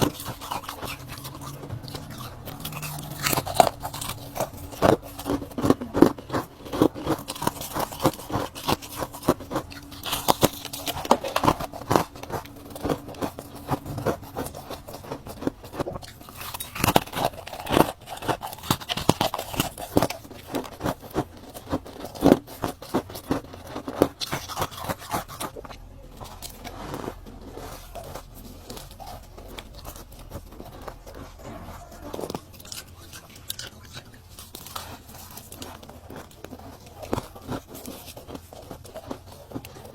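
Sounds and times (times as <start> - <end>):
ice crunching in mouth: 0.0 - 39.9.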